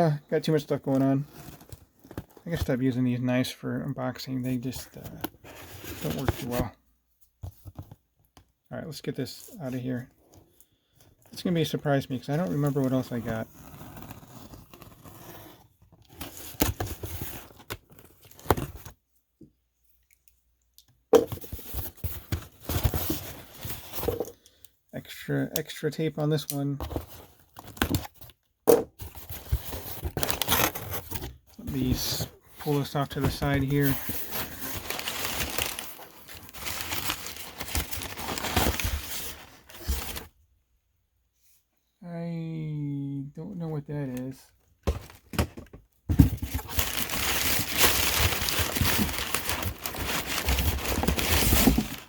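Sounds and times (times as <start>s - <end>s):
cardboard rustling: 4.6s - 6.7s, 11.4s - 19.0s, 21.2s - 24.3s, 26.8s - 28.3s, 29.0s - 40.4s, 44.8s - 52.0s.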